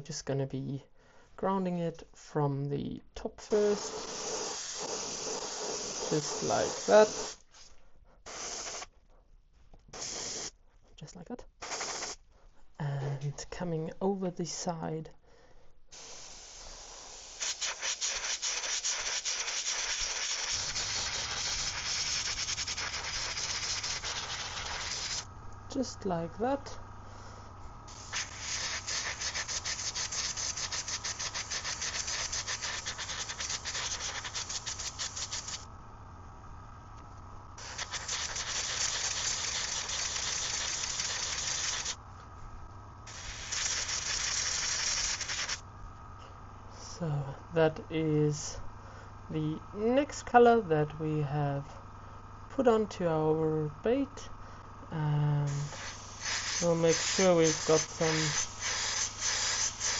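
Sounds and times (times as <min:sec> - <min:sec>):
airbrush hissing: 0:03.5 - 0:08.9, 0:09.9 - 0:10.6, 0:11.6 - 0:12.2, 0:15.9 - 0:25.3, 0:27.1 - 0:35.7, 0:37.6 - 0:42.0, 0:43.0 - 0:45.6, 0:55.4 - 0:59.9
low hum: 0:35.5 - 0:37.6.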